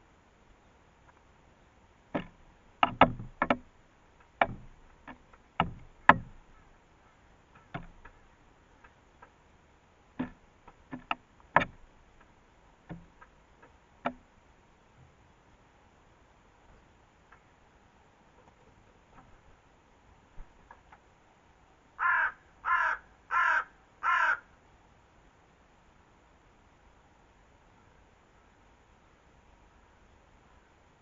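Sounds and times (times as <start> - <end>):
beak pecking on a bird feeder: 4.3 - 6.7, 7.5 - 9.0.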